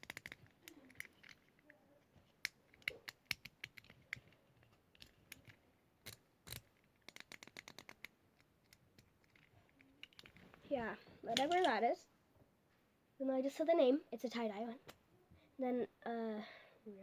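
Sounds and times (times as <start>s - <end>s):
plastic buttons clicking: 0.0s - 1.5s, 2.4s - 4.4s, 5.0s - 10.4s.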